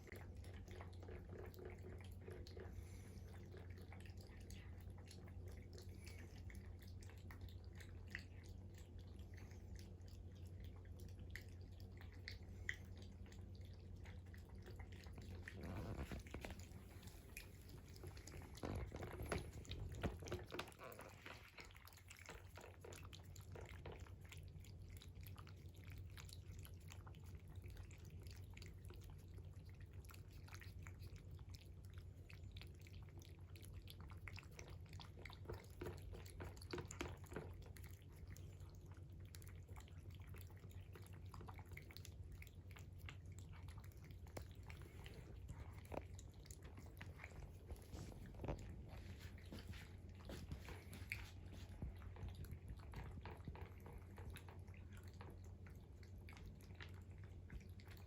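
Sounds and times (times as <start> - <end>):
cats chewing food: 0.0 - 58.0
small clicks at food: 32.6 - 48.9.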